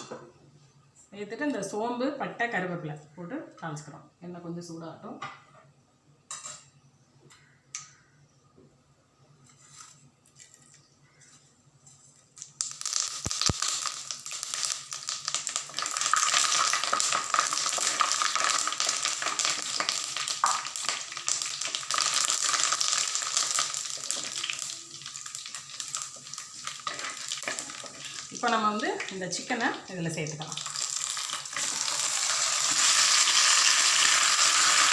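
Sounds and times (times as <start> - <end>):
oil sizzling and crackling in pan: 12.4 - 34.9.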